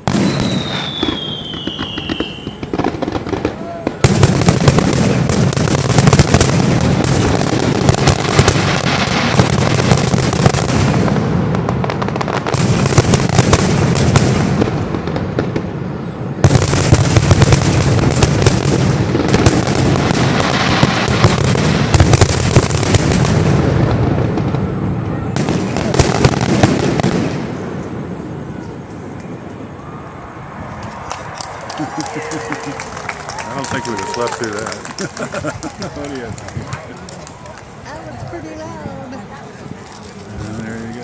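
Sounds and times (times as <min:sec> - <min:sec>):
fireworks booming and crackling: 0:00.0 - 0:29.9, 0:30.6 - 0:41.0.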